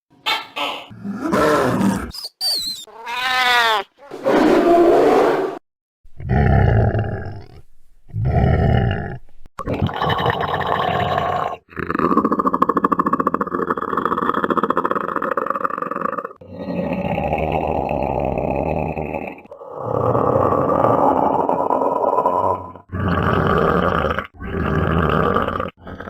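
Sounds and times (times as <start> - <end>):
monster growling: 0.9 - 2.1, 6.2 - 9.2, 9.8 - 26.0.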